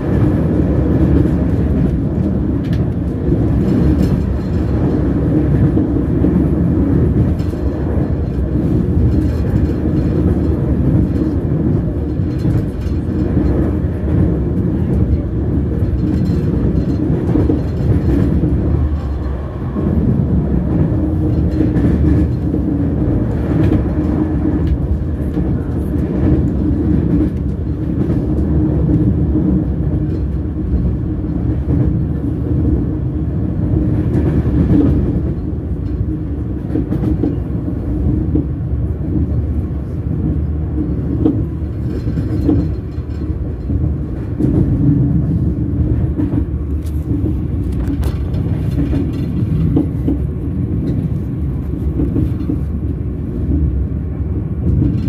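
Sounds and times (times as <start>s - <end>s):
train wheels rumbling on rails: 0.0s - 55.0s.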